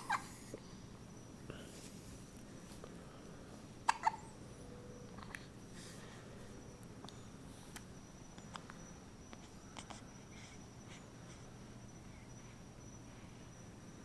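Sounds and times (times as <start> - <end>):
faint high-pitched whine: 0.0 - 14.0.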